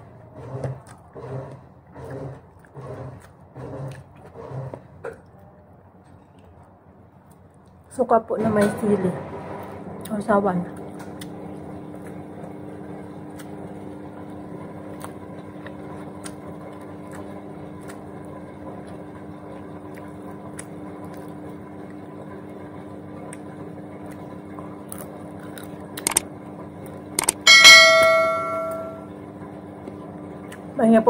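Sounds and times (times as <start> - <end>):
crunching of eating fried fish: 10.8 - 27.4
washing machine humming: 27.0 - 29.1.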